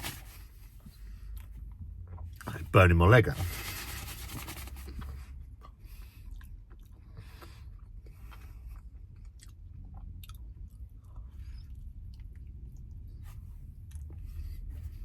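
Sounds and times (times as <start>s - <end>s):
person chewing pastry: 3.4s - 15.0s.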